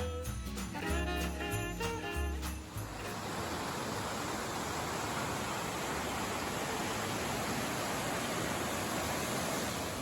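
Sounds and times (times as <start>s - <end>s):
upbeat music with jingling percussion: 0.0s - 3.1s.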